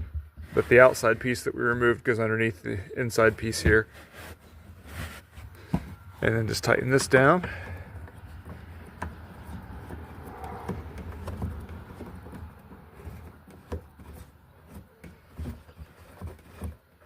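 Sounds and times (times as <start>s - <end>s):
hands clicking plastic parts: 6.7s - 17.0s.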